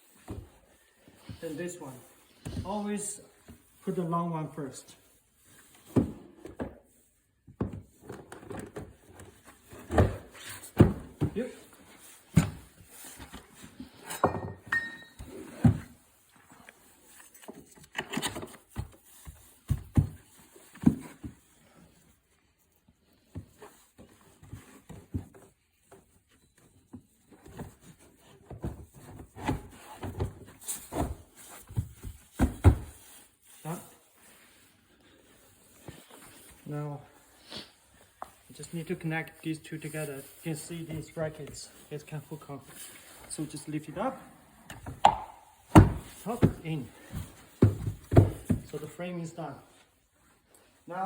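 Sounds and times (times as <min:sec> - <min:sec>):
furniture parts knocking and thumping: 0:05.8 - 0:16.0, 0:27.3 - 0:33.2, 0:44.7 - 0:48.8.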